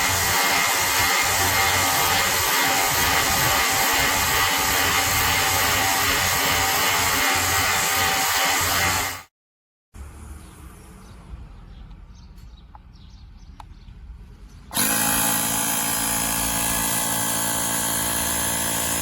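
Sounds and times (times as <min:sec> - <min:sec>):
electric air compressor whirring: 0:00.0 - 0:09.3, 0:14.7 - 0:19.0.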